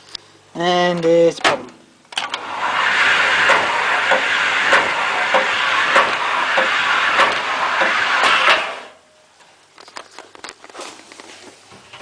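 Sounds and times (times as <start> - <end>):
dryer drum knocking: 1.5 - 8.9
tumble dryer airflow rushing: 2.2 - 9.0.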